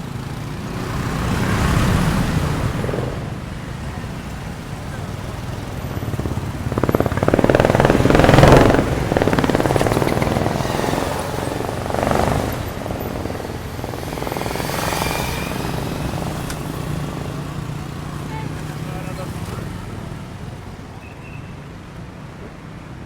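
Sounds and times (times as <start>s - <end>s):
steady low traffic rumble: 0.0s - 21.0s
motor vehicles passing: 0.0s - 23.0s
engine with fast pulsing beat: 4.5s - 19.1s.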